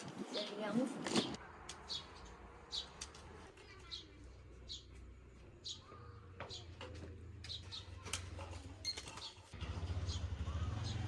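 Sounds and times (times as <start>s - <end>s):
small bird chirping: 3.7s - 6.8s.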